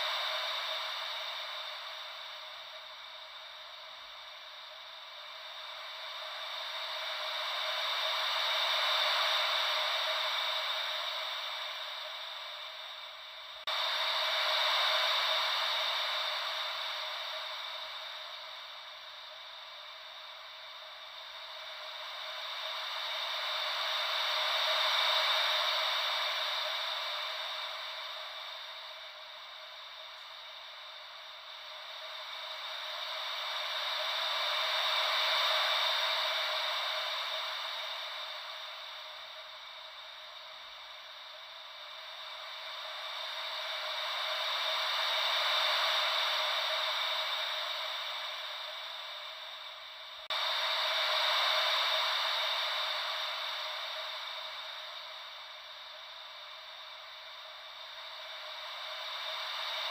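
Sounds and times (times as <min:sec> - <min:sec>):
ocean waves white noise: 0:00.0 - 0:59.9.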